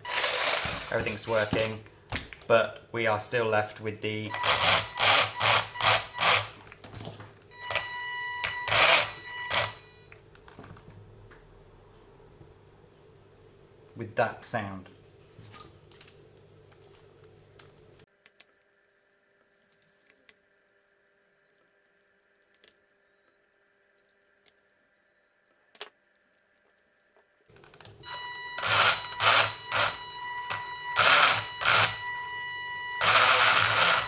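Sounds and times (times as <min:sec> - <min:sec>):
electric motor whining with grinding: 0:28.0 - 0:34.0.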